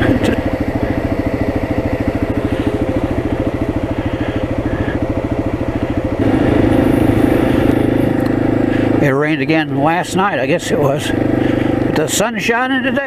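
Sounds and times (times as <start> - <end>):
off-road vehicle engine puttering: 0.0 - 13.0.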